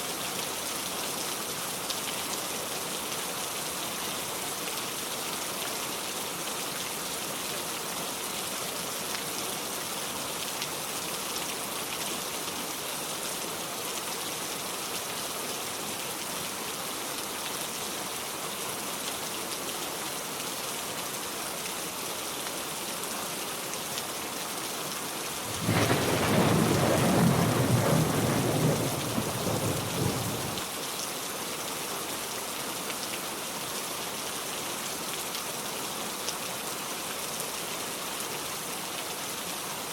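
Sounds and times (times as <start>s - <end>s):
heavy rain falling: 25.4s - 30.7s
low rumble of thunder: 25.4s - 30.7s.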